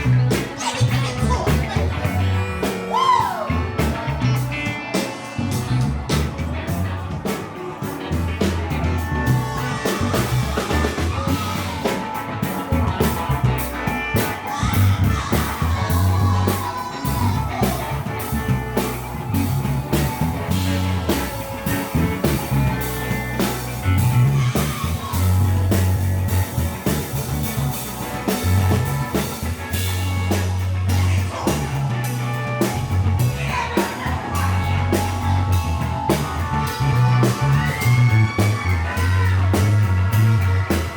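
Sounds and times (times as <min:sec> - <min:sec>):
funk band playing: 0:00.0 - 0:40.9
repeating bass line: 0:00.0 - 0:40.9.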